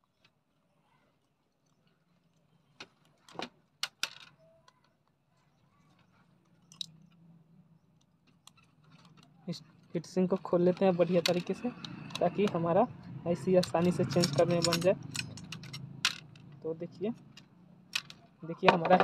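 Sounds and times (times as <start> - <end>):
screwdriver and metal parts clicking: 13.4 - 16.6, 17.2 - 19.0.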